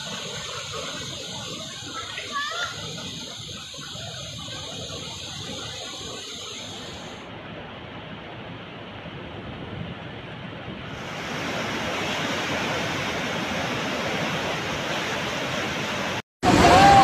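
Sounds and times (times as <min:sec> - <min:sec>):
fast-flowing water rushing: 0:00.0 - 0:07.4, 0:10.9 - 0:17.0.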